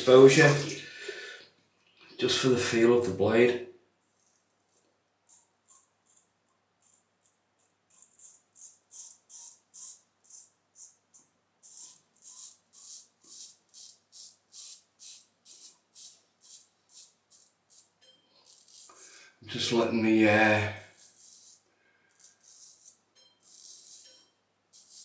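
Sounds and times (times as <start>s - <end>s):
razor scraping stubble: 0.0s - 0.8s, 4.2s - 25.0s.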